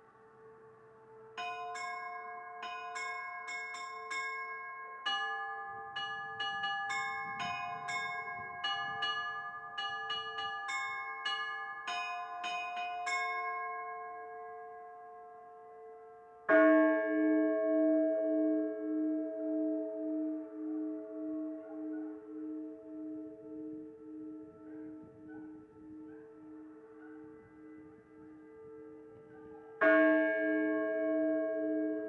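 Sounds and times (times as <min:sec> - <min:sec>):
faint air-raid siren: 0:00.0 - 0:02.2, 0:20.1 - 0:32.0
church bells ringing: 0:01.4 - 0:32.0.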